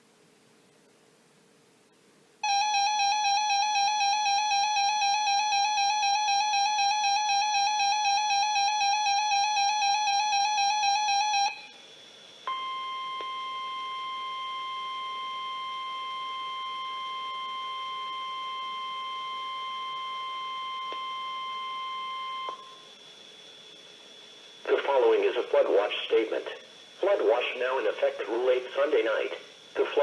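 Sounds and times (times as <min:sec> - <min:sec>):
wavering electronic tone: 0:02.4 - 0:11.8, 0:12.4 - 0:23.9.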